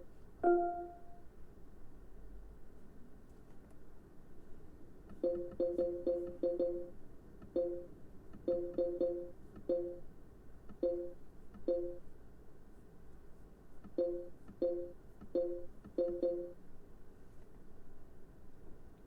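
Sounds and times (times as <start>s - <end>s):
two-note electronic beep: 0.4s - 1.2s.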